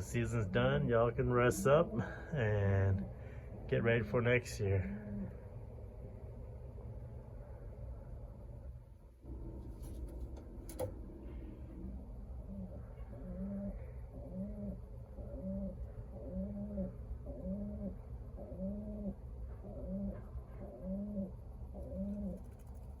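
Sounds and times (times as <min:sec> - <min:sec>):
steady low hum: 0:00.0 - 0:23.0
pigeon cooing: 0:00.1 - 0:03.4, 0:04.8 - 0:05.6, 0:11.2 - 0:23.0.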